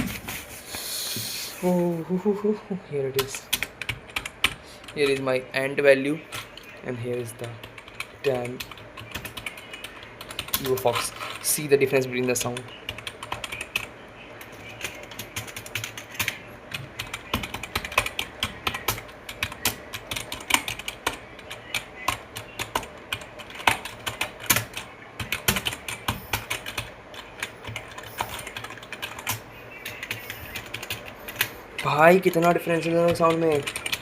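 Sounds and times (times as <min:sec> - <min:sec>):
keyboard keys clicking: 0:17.0 - 0:34.0.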